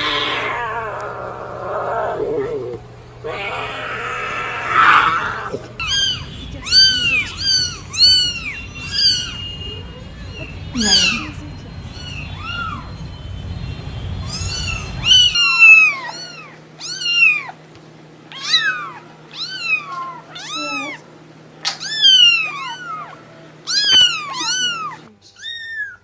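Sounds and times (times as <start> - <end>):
kitten meowing: 3.3 - 13.0, 14.2 - 17.6, 18.3 - 21.0, 21.6 - 26.0.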